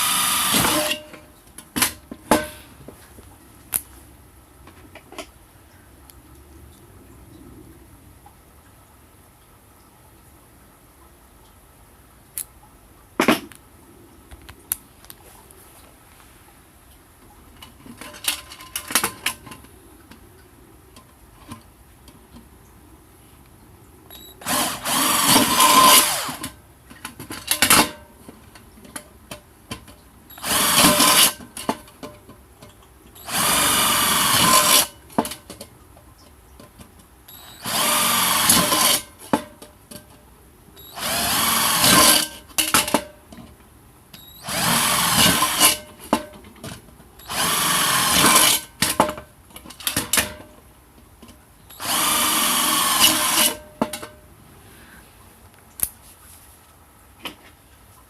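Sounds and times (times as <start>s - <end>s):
electric drill whining: 0.0s - 1.0s, 24.4s - 26.4s, 30.4s - 31.4s, 33.2s - 35.0s, 37.4s - 39.2s, 40.9s - 42.4s, 44.4s - 45.8s, 47.3s - 48.7s, 51.8s - 53.6s.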